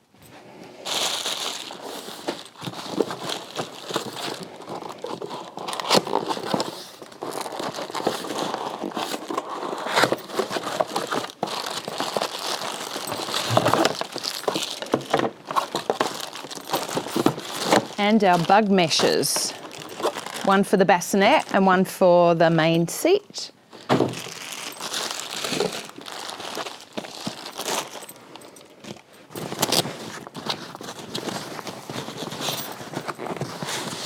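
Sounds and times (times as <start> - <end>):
plastic packaging crinkling: 0.8 - 21.7, 23.7 - 34.0.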